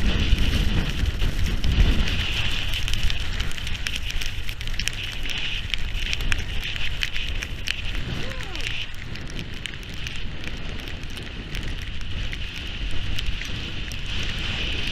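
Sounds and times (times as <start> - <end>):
rain patter on camera housing: 0.0 - 14.9
wind buffeting microphone: 0.0 - 14.9.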